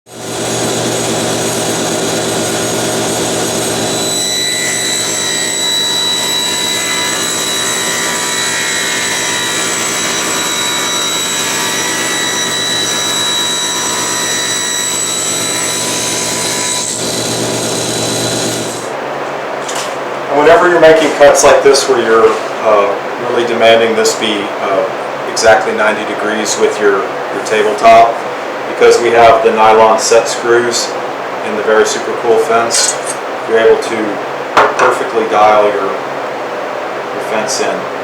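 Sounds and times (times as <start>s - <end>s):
table saw whining: 0.1s - 19.0s.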